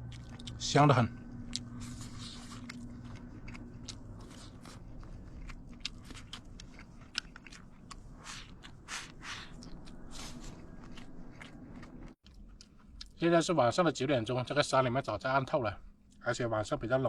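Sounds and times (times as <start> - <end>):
person chewing crunchy food: 0.0 - 13.2.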